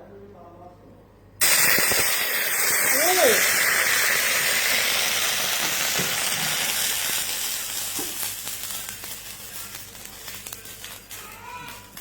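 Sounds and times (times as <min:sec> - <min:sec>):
water poured into pan: 0:01.4 - 0:10.5
oil and leaves sizzling in a pan: 0:01.4 - 0:12.0.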